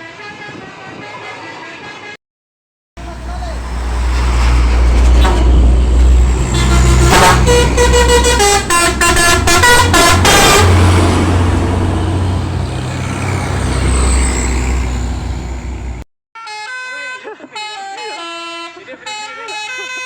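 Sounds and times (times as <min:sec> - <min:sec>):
truck engine running: 0:03.0 - 0:16.0
musical truck horn: 0:03.0 - 0:20.0.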